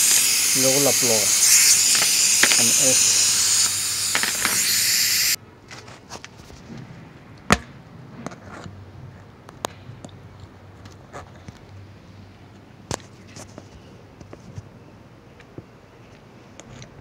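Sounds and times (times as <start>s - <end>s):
hand tools clicking and knocking: 0.0s - 5.2s
loud steady hiss: 0.0s - 5.4s.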